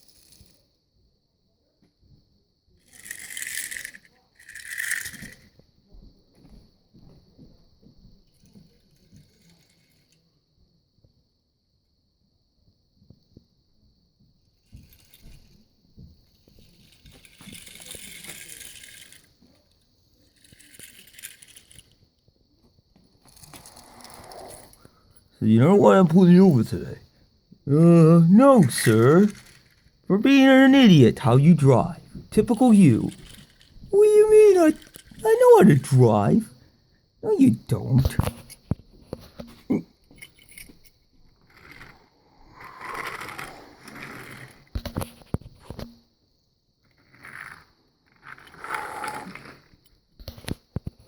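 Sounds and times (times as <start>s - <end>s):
toy cars clicking and knocking: 0.0s - 0.6s, 2.8s - 5.6s, 8.2s - 10.2s, 14.5s - 24.9s, 27.7s - 36.5s, 37.8s - 46.0s, 46.9s - 51.0s
toy cars scraping: 0.0s - 0.6s, 2.8s - 5.5s, 8.4s - 10.2s, 14.7s - 15.6s, 16.4s - 22.0s, 23.2s - 27.1s, 27.7s - 36.5s, 39.2s - 45.8s, 46.9s - 50.6s.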